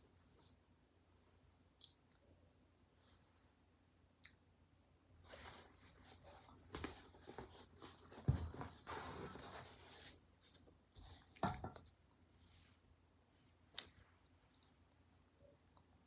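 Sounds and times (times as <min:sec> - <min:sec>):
rustling and scraping of handling: 0:05.2 - 0:15.1.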